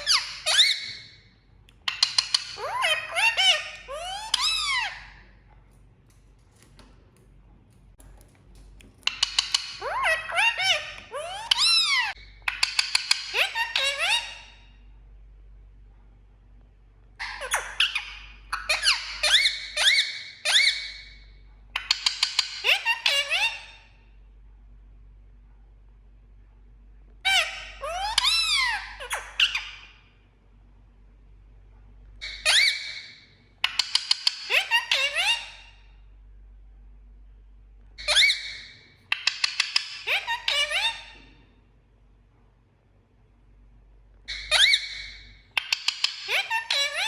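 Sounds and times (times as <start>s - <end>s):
parrot squawking: 0.0s - 1.2s, 1.8s - 5.4s, 9.0s - 14.7s, 17.2s - 21.2s, 21.8s - 24.0s, 27.2s - 30.0s, 32.2s - 35.9s, 38.0s - 41.4s, 44.3s - 47.0s
parrot clicking: 1.6s - 2.6s, 5.7s - 10.0s, 12.4s - 13.4s, 39.1s - 40.1s, 45.6s - 46.4s
parrot clicking calls: 1.6s - 5.2s, 6.0s - 14.2s, 21.8s - 23.6s, 33.6s - 35.5s, 39.1s - 41.2s, 44.3s - 47.0s.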